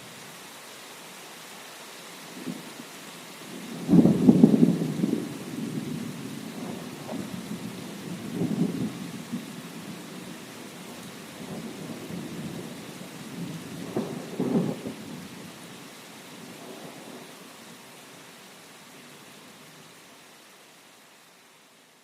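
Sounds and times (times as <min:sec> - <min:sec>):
steady rain: 0:00.0 - 0:22.0
thunder rumbling: 0:03.7 - 0:10.7, 0:11.4 - 0:15.3.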